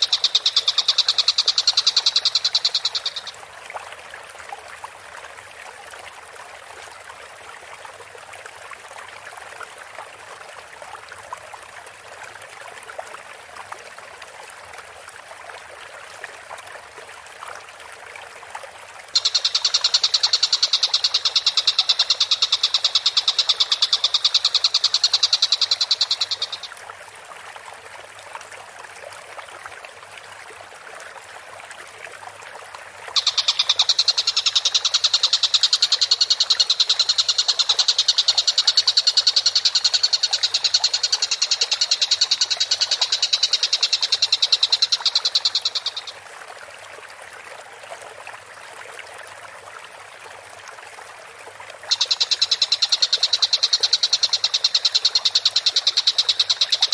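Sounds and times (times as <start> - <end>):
soft low bird chattering: 0.0 - 3.4, 19.2 - 26.7, 33.2 - 46.1, 51.9 - 56.9.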